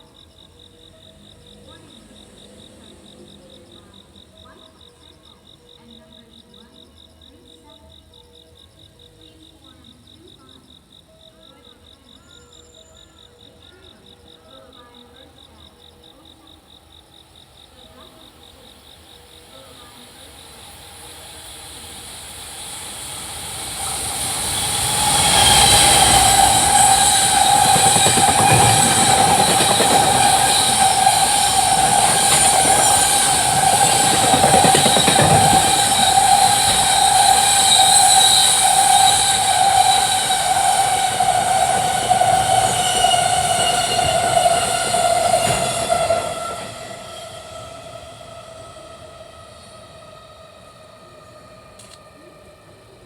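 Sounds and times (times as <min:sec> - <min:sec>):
freight train wagons rushing on rails: 0:17.6 - 0:53.0.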